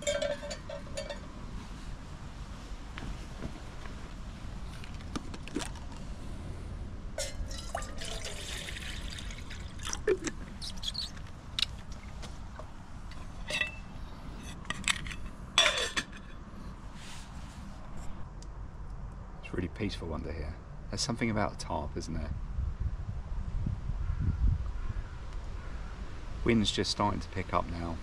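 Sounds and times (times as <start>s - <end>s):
liquid pouring and trickling: 7.2s - 12.2s
drips: 7.2s - 12.7s.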